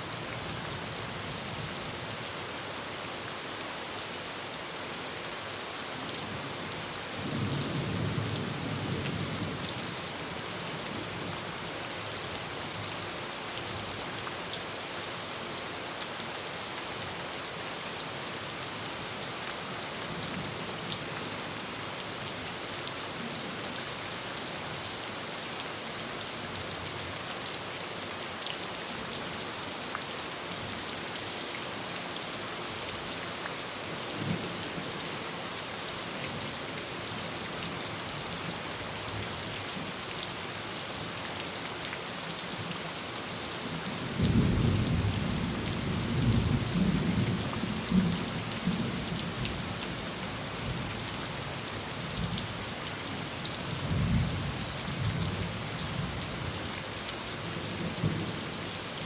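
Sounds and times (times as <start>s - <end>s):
heavy rain on a tin roof: 0.0s - 59.0s.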